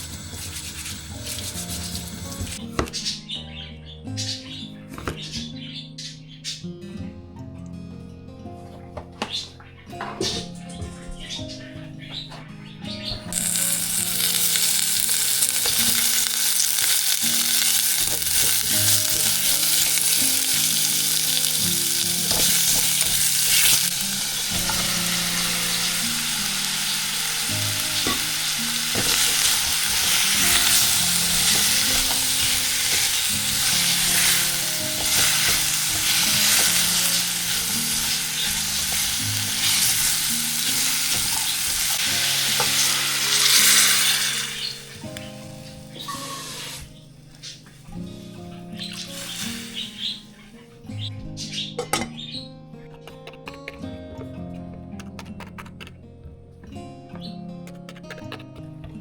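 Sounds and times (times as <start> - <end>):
food sizzling in a pan: 0.0 - 2.6, 13.3 - 50.6
stirring scrapes and clicks: 55.0 - 56.0, 57.6 - 58.7.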